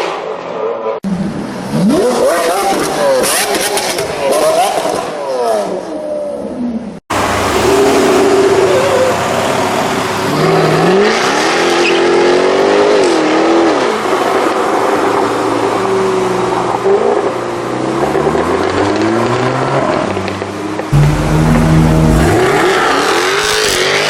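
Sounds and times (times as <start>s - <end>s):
car engine revving: 20.9s - 24.0s.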